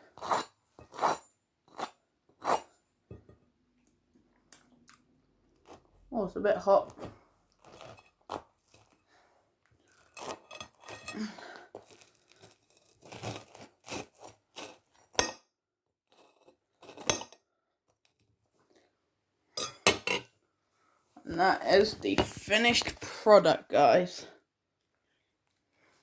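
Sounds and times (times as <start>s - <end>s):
knife crunching toasted bread: 5.5s - 6.0s, 7.6s - 9.0s, 9.8s - 15.2s, 16.1s - 17.3s.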